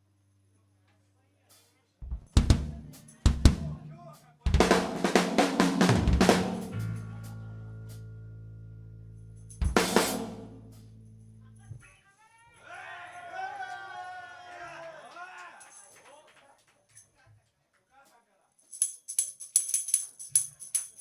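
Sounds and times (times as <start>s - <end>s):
bass and guitar chord ringing: 2.0s - 4.8s, 5.8s - 11.8s
drum and cymbal hit: 2.0s - 7.3s, 9.5s - 11.2s
drum strokes: 2.0s - 7.3s, 9.5s - 11.1s.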